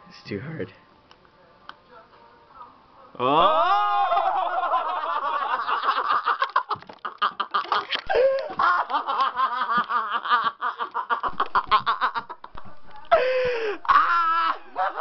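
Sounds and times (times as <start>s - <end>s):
people laughing: 3.4s - 15.0s.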